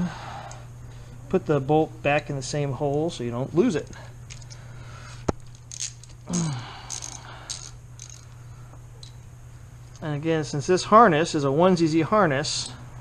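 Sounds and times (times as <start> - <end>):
low hum: 0.0 - 13.0
tools scraping and rattling: 3.7 - 6.3, 6.9 - 8.4
man grunting: 6.3 - 6.9.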